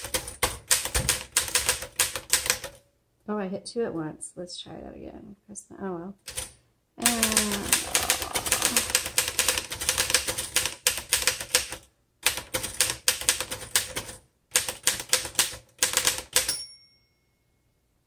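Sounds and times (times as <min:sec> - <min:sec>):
manual typewriter typing: 0:07.0 - 0:16.5.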